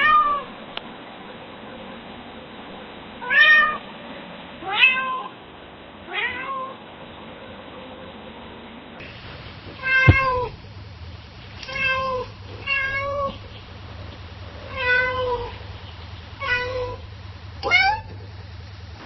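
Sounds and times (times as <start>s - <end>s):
cat meowing: 0.0s - 0.5s, 3.2s - 3.8s, 4.6s - 5.4s, 6.1s - 6.8s, 9.8s - 10.6s, 11.7s - 13.4s, 14.6s - 15.6s, 16.4s - 17.0s, 17.6s - 18.2s
faint low hum: 0.0s - 19.0s
short sharp thump: 9.7s - 10.5s.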